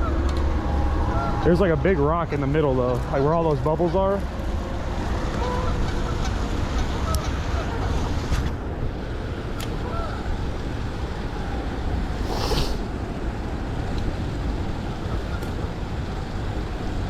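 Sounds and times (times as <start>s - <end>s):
brief hiss: 12.2s - 12.9s.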